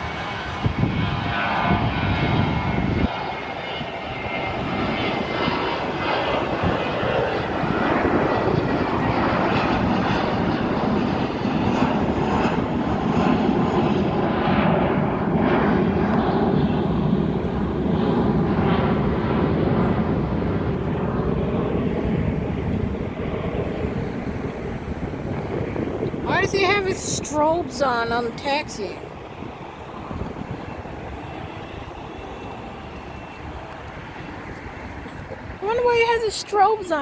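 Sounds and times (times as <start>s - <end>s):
jet engines running: 0.0s - 37.0s.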